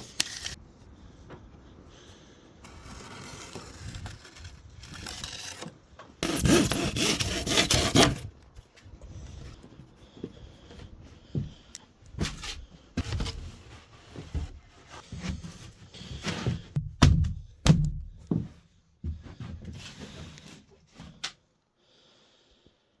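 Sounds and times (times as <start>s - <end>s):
foam boards knocking and scraping: 14.2s - 18.6s.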